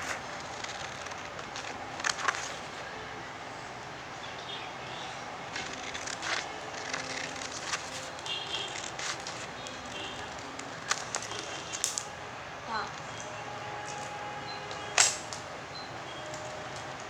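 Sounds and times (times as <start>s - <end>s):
scissors snipping paper: 0.0s - 2.7s, 5.5s - 12.1s
steady background hiss: 0.0s - 17.0s.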